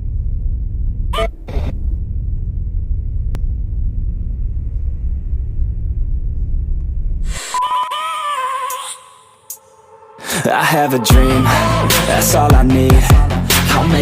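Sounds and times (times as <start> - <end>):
steady low rumble: 0.0 - 7.4, 10.2 - 14.0.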